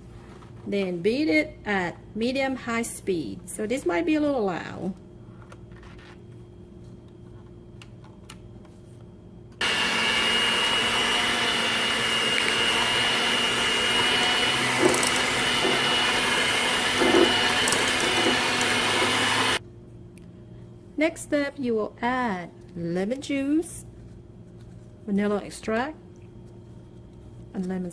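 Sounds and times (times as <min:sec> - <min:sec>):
electric mixer whining: 0:09.6 - 0:19.6.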